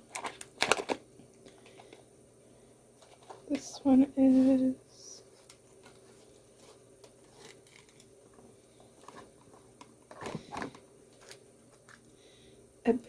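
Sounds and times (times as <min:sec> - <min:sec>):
package crinkling and rustling: 0:00.1 - 0:02.0, 0:05.3 - 0:12.1.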